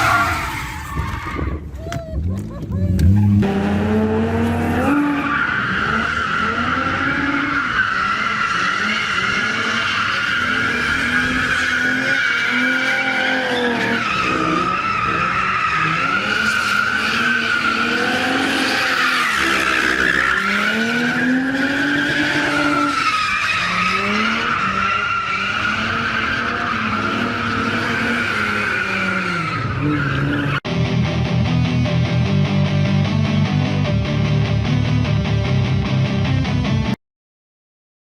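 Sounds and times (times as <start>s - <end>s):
engines revving: 2.9s - 30.6s.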